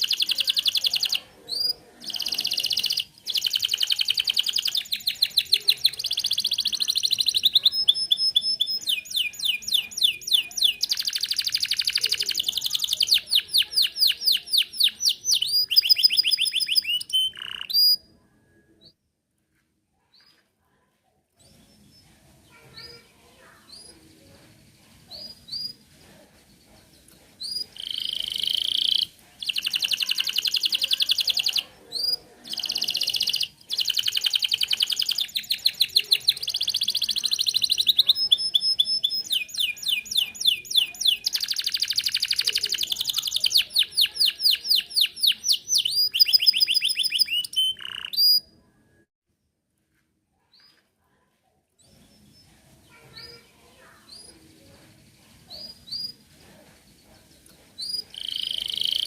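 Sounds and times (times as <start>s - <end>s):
canary singing trills: 0.0s - 18.9s, 27.0s - 48.6s, 55.5s - 59.0s.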